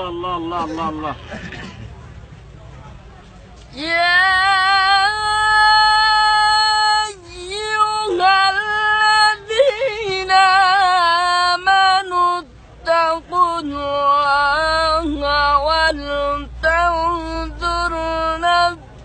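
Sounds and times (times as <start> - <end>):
man reciting melodically: 0.0 - 1.6.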